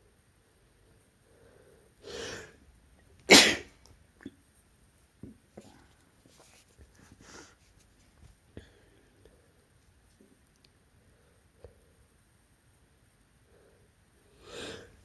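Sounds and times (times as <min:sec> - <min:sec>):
person sneezing: 0:03.3 - 0:03.7
drawn-in breath: 0:13.6 - 0:15.0.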